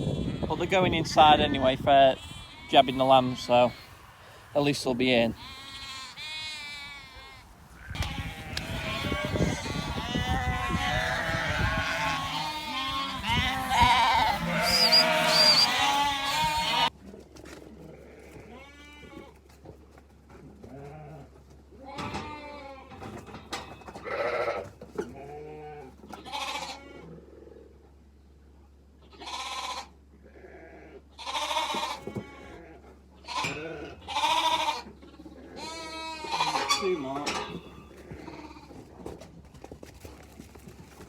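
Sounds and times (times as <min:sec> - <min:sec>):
sheep and lambs bleating: 0:00.0 - 0:04.5, 0:05.1 - 0:16.9, 0:18.1 - 0:19.4, 0:20.7 - 0:22.9, 0:24.0 - 0:27.1, 0:29.0 - 0:38.8.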